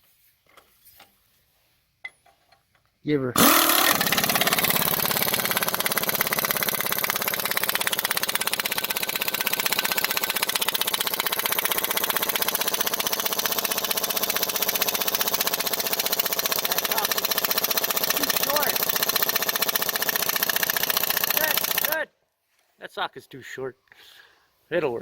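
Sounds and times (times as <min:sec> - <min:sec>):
pneumatic impact wrench hammering: 0:03.4 - 0:22.0.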